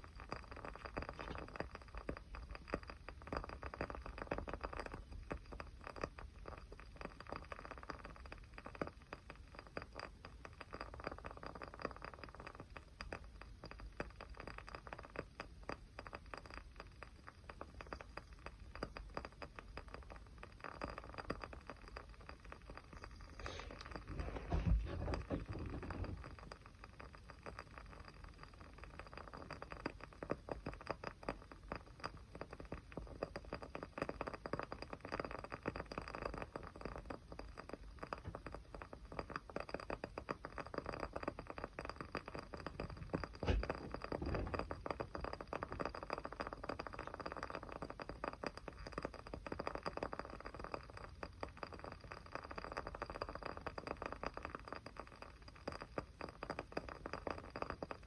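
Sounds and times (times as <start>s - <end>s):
small fire crackling: 0.0s - 58.0s
loud pop of fire: 43.0s - 45.0s.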